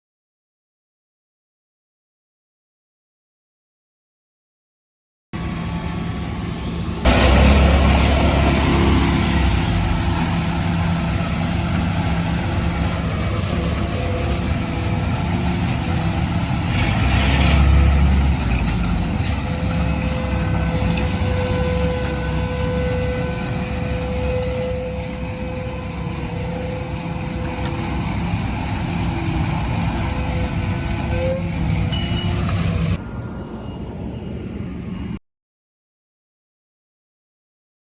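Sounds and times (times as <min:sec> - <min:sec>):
heavy truck engine running: 0:05.4 - 0:33.0
steady whine: 0:05.4 - 0:35.2.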